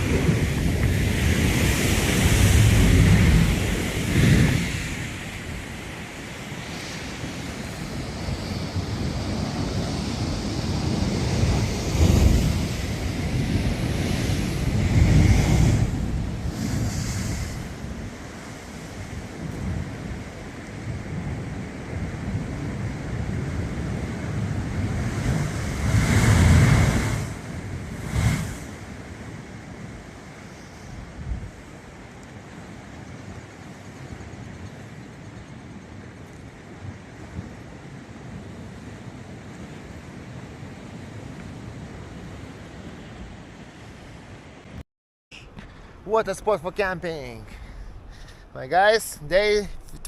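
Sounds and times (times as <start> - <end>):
wind rushing: 0.0 - 18.8
wind buffeting microphone: 0.0 - 44.7
sea surf: 0.0 - 50.0.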